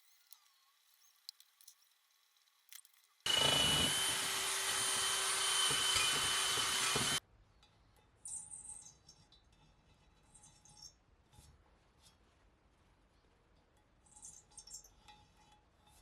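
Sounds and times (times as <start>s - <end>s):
power tool grinding: 3.3s - 7.2s.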